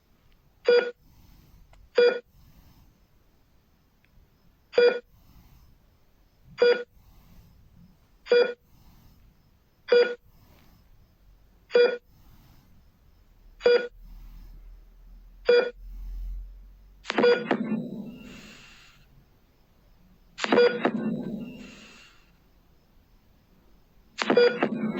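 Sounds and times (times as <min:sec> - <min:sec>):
heart rate monitor beeping: 0:00.6 - 0:01.1, 0:01.9 - 0:02.4, 0:04.7 - 0:05.4, 0:06.5 - 0:07.2, 0:07.8 - 0:10.6, 0:11.6 - 0:12.6, 0:13.2 - 0:14.4, 0:15.4 - 0:19.0, 0:19.6 - 0:22.2, 0:24.2 - 0:24.9
louder fuller monitor tone: 0:20.4 - 0:22.1.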